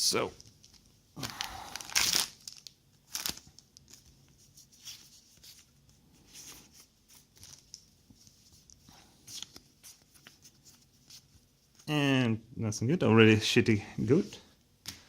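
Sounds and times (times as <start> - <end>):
foil wrapper crinkling: 0.4 - 4.1.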